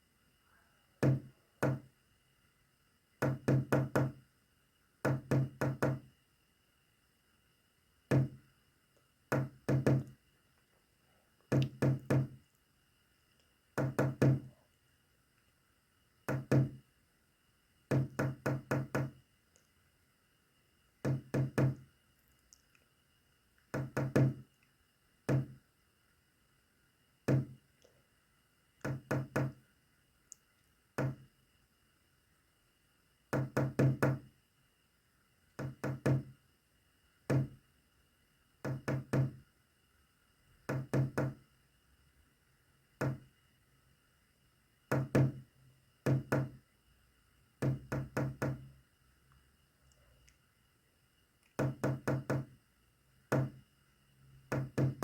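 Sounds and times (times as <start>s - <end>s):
knocking on a hard surface: 1.0s - 1.9s, 3.2s - 4.2s, 5.0s - 6.0s, 8.1s - 8.4s, 9.3s - 10.1s, 11.5s - 12.4s, 13.8s - 14.5s, 16.3s - 16.8s, 17.9s - 19.2s, 21.0s - 21.8s, 23.7s - 24.4s, 25.3s - 25.6s, 27.3s - 27.6s, 28.8s - 29.6s, 31.0s - 31.2s, 33.3s - 34.2s, 35.6s - 36.3s, 37.3s - 37.6s, 38.6s - 39.4s, 40.7s - 41.4s, 43.0s - 43.2s, 44.9s - 45.4s, 46.1s - 46.6s, 47.6s - 48.6s, 51.6s - 52.5s, 53.3s - 53.6s, 54.5s - 55.0s.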